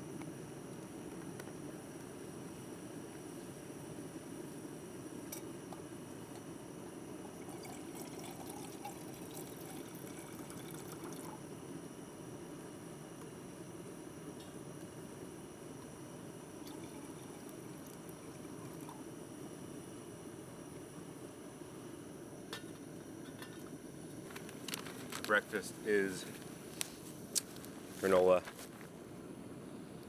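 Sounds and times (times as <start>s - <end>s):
water pouring and trickling: 7.4s - 11.3s.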